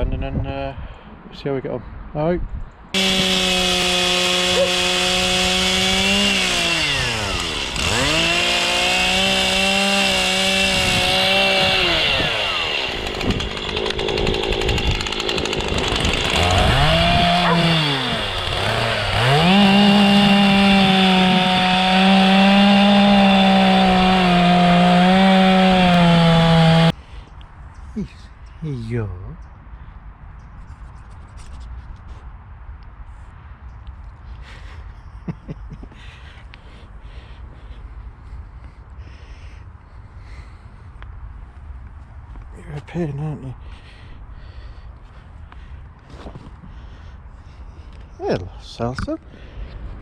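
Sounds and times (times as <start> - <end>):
chainsaw running at high revs: 3.0 - 27.0.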